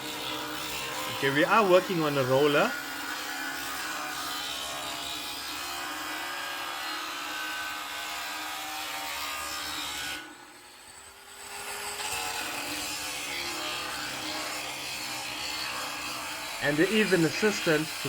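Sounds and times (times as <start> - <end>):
angle grinder cutting steel pipe: 0.0 - 18.0.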